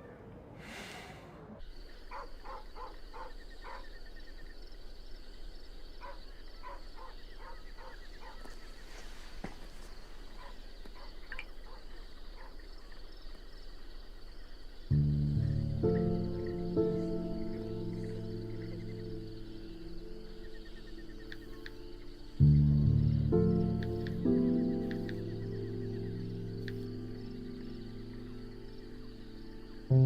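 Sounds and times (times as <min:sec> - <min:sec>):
frogs croaking: 0:01.5 - 0:30.0
pulsing insect chorus: 0:01.6 - 0:30.0.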